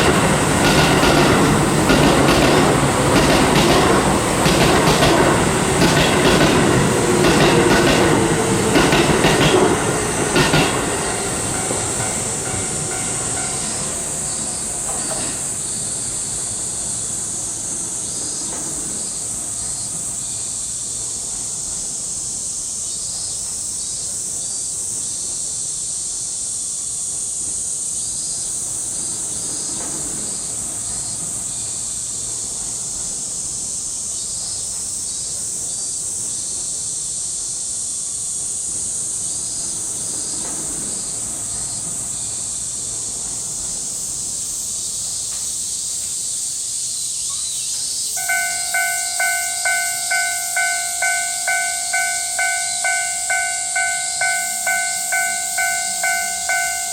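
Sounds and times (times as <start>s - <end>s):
cicadas droning: 0.0s - 56.9s
level crossing warning bell: 8.8s - 15.4s, 48.2s - 56.9s.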